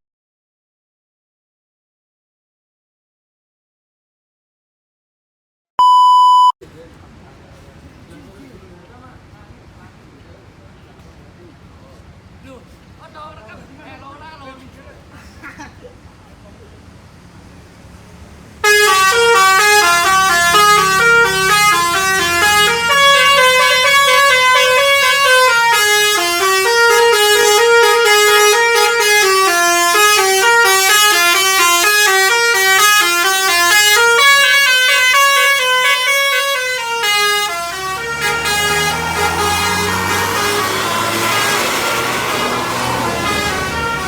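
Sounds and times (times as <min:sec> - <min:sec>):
bus engine rumble: 0:06.6 - 0:44.0
bus musical horn melody: 0:18.6 - 0:44.0.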